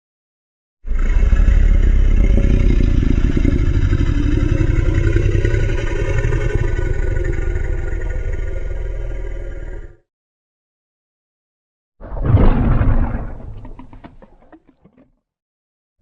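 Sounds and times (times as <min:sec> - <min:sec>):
deep growling monster roar: 0:00.8 - 0:10.0, 0:12.0 - 0:14.6.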